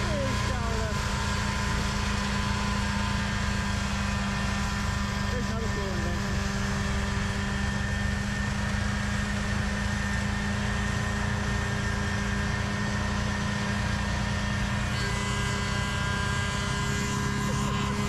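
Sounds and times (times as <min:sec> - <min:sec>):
snowblower engine drone: 0:00.0 - 0:18.0.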